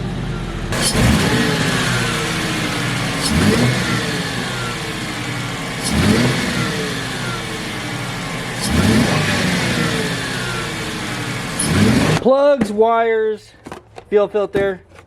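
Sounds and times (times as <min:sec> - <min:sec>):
car engine revving: 0:00.0 - 0:12.3.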